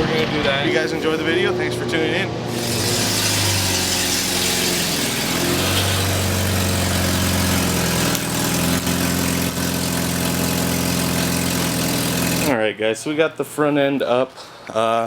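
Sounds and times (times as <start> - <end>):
loud car engine idling: 1.4 - 12.5.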